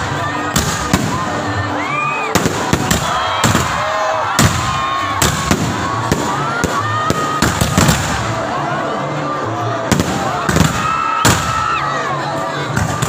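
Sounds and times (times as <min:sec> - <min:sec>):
crowd noise: 0:00.0 - 0:13.0
fireworks bangs: 0:00.5 - 0:01.4, 0:02.3 - 0:08.4, 0:09.9 - 0:11.6.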